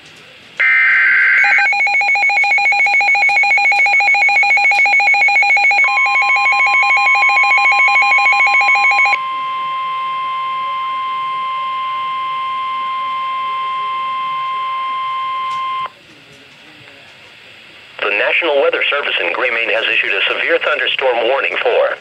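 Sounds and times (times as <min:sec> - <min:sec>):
steady alarm tone: 0:00.6 - 0:15.9.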